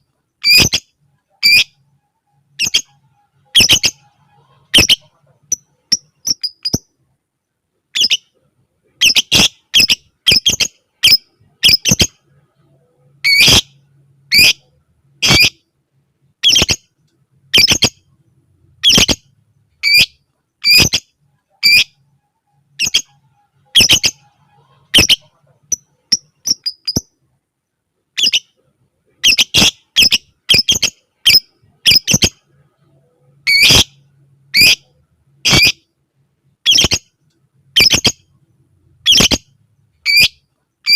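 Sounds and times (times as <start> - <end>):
lovebird shrill clipped calls: 3.6 - 4.0, 17.5 - 17.9, 18.8 - 19.2, 23.7 - 24.2, 29.2 - 32.4, 33.5 - 33.9, 34.5 - 34.8, 35.5 - 35.8, 36.6 - 37.0, 37.8 - 38.2, 39.0 - 40.9.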